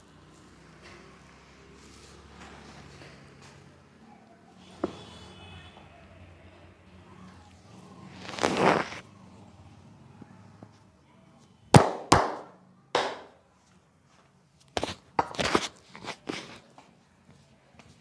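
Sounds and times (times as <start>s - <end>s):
hands slapping a body: 11.8s - 13.3s.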